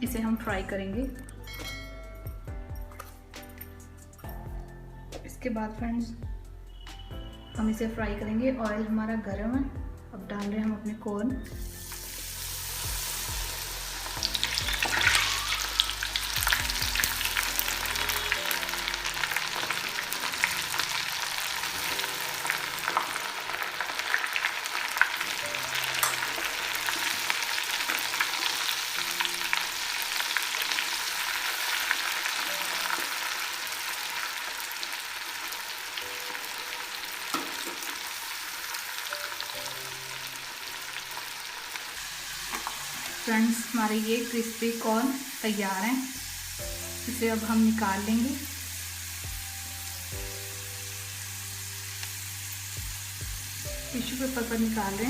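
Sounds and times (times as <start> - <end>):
battered corn deep-frying in oil: 11.6 - 55.0.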